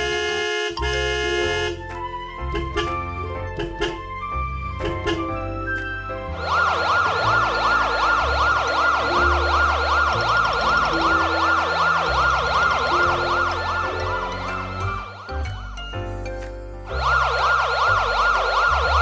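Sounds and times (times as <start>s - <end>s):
background music: 0.0s - 19.0s
siren wailing: 6.2s - 15.6s, 16.9s - 19.0s.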